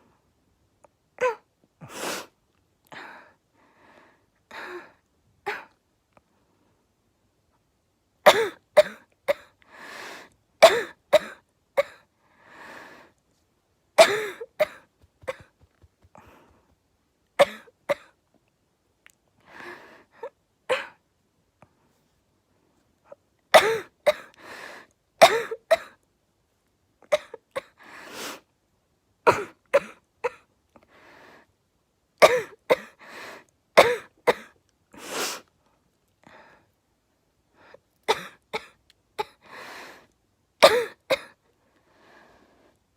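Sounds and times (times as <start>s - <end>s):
girl coughing: 8.3s - 9.5s, 10.6s - 12.0s, 14.0s - 15.5s, 17.4s - 18.1s, 23.6s - 24.3s, 25.2s - 25.9s, 29.3s - 30.4s, 32.2s - 32.9s, 33.8s - 34.5s, 40.6s - 41.4s.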